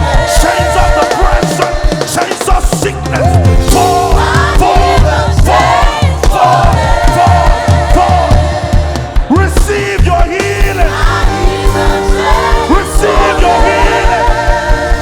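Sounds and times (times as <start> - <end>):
drums: 0.0 - 15.0
bass: 2.8 - 15.0
choir singing long wavering notes: 10.9 - 15.0.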